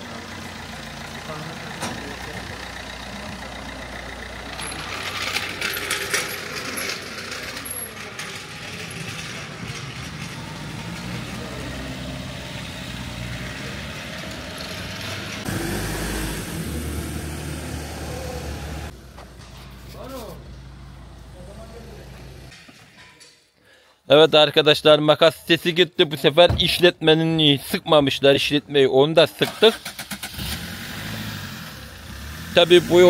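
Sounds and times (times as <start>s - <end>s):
car engine and road noise: 0.0s - 23.0s, 26.2s - 33.0s
knocks and rattles: 4.6s - 11.2s.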